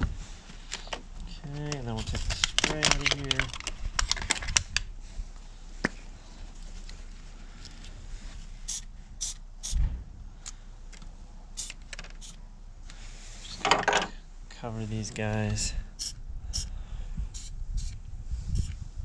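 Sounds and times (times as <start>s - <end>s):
aerosol spray hissing: 8.7s - 9.8s, 17.4s - 18.8s
low bump: 9.8s - 10.3s.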